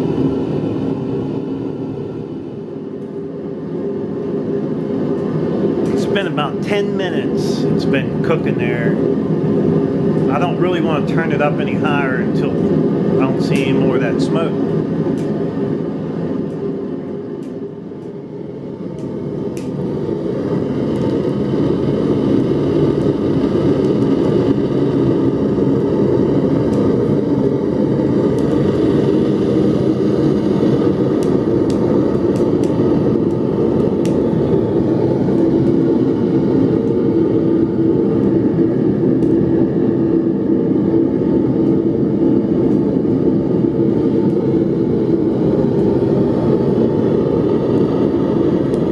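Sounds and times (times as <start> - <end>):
furnace burner flame roaring: 0.0 - 48.9.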